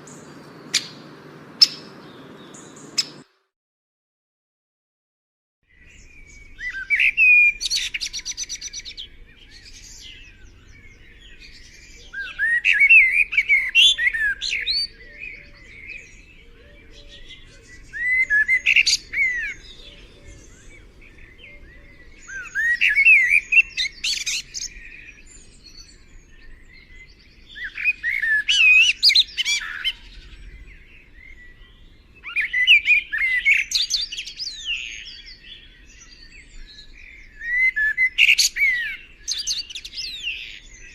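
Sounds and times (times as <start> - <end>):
songbird whistling: 0.0 - 3.2, 11.5 - 20.8, 21.4 - 30.6, 31.2 - 40.9.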